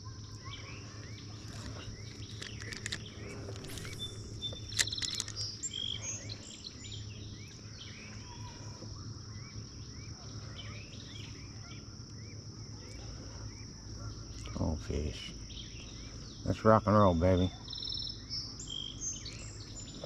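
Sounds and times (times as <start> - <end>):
birds chirping: 0.0 - 20.0
high insect drone: 0.0 - 20.0
low hum: 0.0 - 20.0
sharp clicks and knocks: 2.2 - 5.5.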